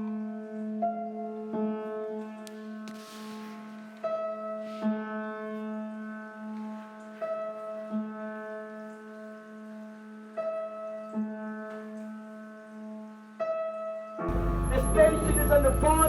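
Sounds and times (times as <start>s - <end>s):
held low note: 14.3s - 16.0s
struck ringing notes: 14.3s - 16.0s.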